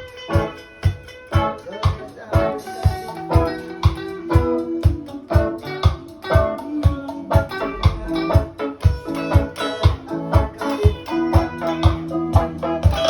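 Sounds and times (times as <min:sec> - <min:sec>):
drum beat: 0:00.0 - 0:13.0
plucked guitar: 0:00.0 - 0:13.0
bass lines: 0:06.3 - 0:13.0.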